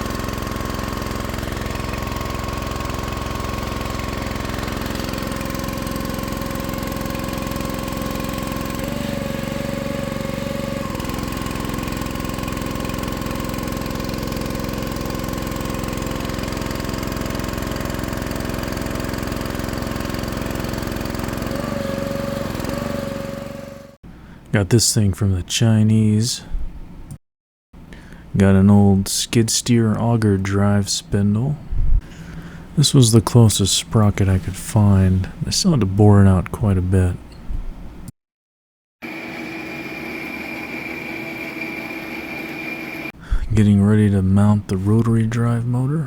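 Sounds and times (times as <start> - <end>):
small engine running: 0.0 - 24.0, 39.0 - 43.2.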